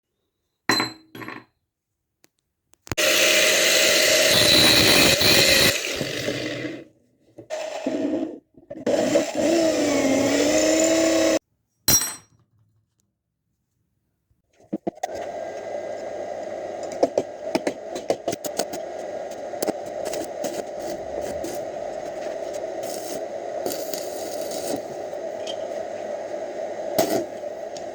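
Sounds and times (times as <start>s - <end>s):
electric power tool running: 3.0s - 6.8s, 8.9s - 11.4s.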